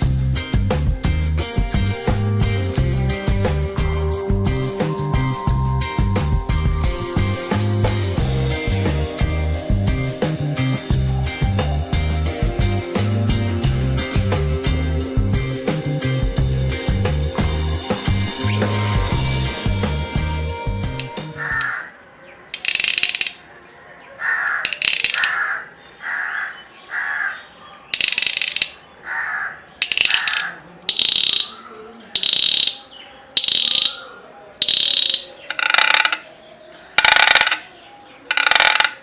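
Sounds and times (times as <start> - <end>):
noisemaker rattling clicks: 22.6 - 23.4, 24.6 - 25.4, 27.9 - 28.8, 29.8 - 31.6, 32.2 - 32.8, 33.4 - 34.0, 34.6 - 36.3, 37.0 - 37.7, 38.3 - 39.0.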